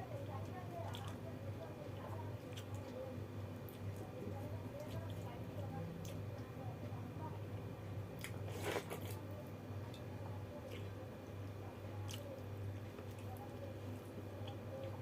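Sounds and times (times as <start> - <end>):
crunchy bites of fried food: 8.1 - 9.2.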